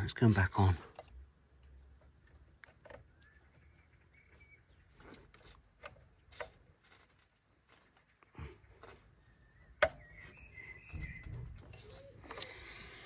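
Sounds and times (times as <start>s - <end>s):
faint bird chirps: 2.3s - 5.6s, 7.0s - 13.0s.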